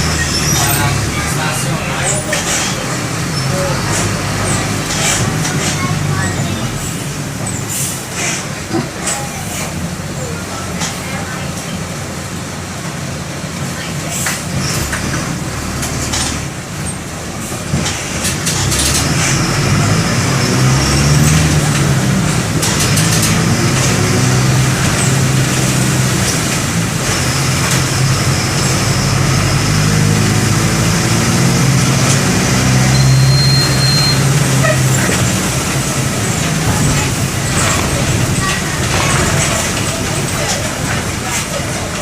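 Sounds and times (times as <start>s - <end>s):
bus diesel engine running: 0.0s - 42.0s
brief high-pitched tone: 32.9s - 34.2s.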